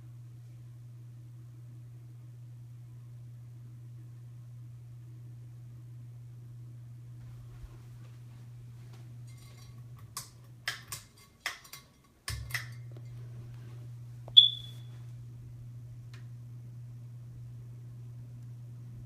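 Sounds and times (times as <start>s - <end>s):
ceiling fan motor hum: 0.0s - 19.0s
bright ringing ping: 14.4s - 14.8s.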